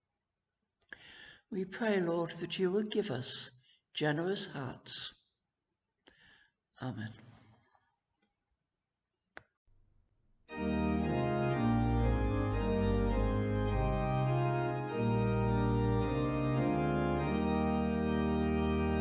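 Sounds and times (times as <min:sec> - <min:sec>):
organ playing a hymn: 0:10.5 - 0:19.0.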